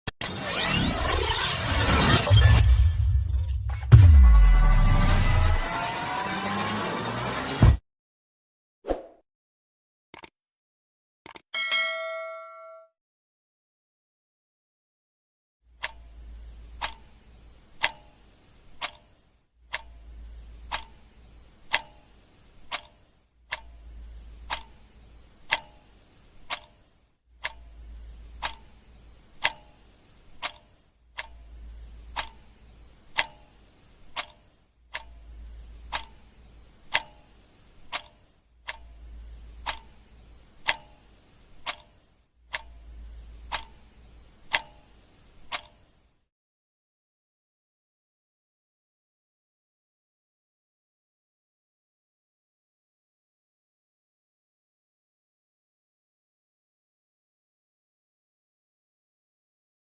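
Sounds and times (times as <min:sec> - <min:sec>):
clock ticking: 0:15.7 - 0:46.0.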